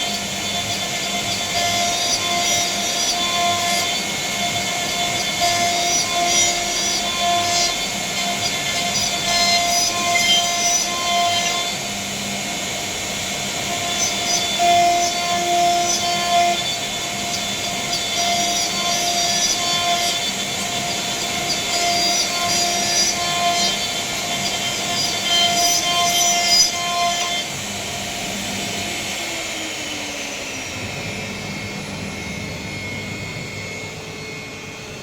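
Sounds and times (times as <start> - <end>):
bit rasping in wood: 0.0 - 11.8, 13.5 - 27.5
router spindle whining: 0.0 - 35.0.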